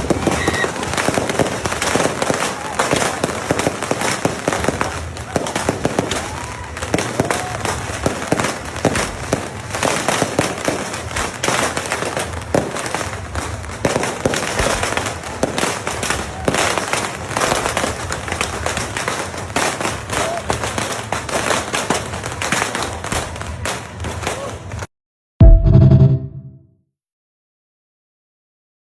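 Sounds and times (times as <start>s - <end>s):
fireworks and firecrackers banging: 0.0s - 24.9s.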